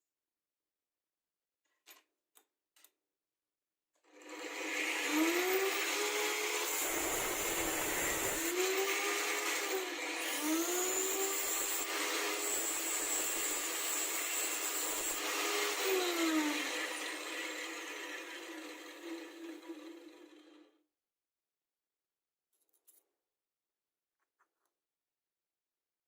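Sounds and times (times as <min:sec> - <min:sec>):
power tool motor running: 0:04.2 - 0:20.7.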